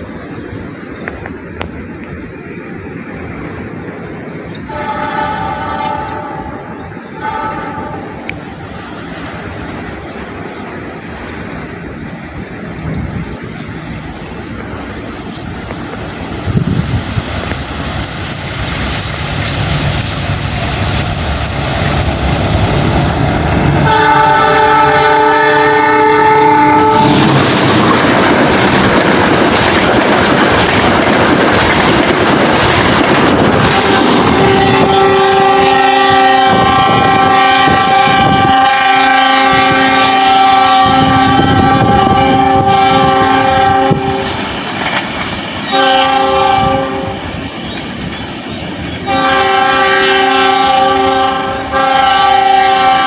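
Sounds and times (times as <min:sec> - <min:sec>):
train rumbling: 0:00.0 - 0:53.0
wheel and rail rumble: 0:00.0 - 0:53.0
locomotive horn: 0:04.7 - 0:08.4, 0:20.0 - 0:27.3, 0:33.4 - 0:44.4, 0:45.7 - 0:47.3, 0:49.0 - 0:53.0.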